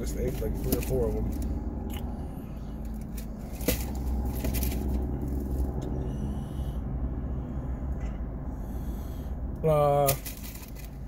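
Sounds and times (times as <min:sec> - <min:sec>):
scraping and handling noises: 0:00.0 - 0:01.5, 0:02.8 - 0:05.8, 0:10.1 - 0:11.0
steady low rumble: 0:00.0 - 0:11.0.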